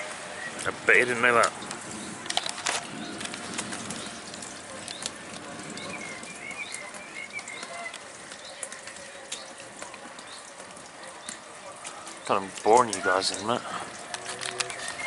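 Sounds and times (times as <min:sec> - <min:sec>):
light rain drops ticking: 0:00.0 - 0:15.0
bird twittering faintly: 0:01.4 - 0:09.6.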